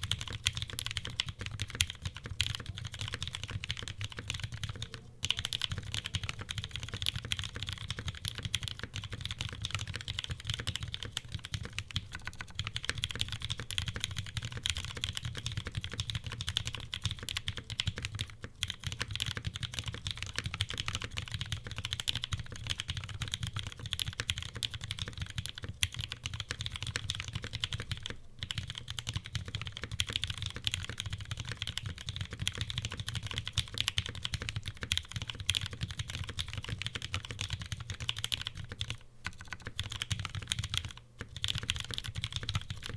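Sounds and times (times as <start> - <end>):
mechanical keyboard typing: 0.0 - 42.9.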